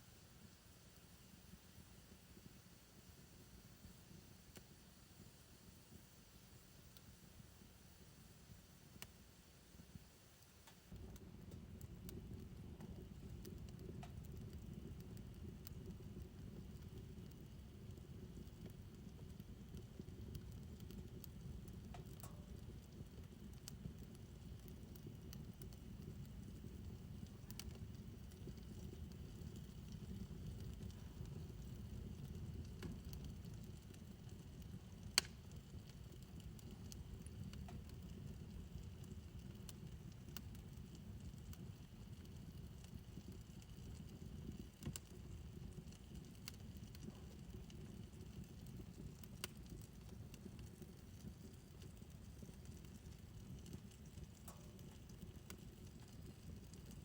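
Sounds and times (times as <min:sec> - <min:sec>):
fire crackling: 0:00.0 - 0:57.0
fire low rumble: 0:00.0 - 0:57.0
sharp pop of fire: 0:35.2 - 0:35.4.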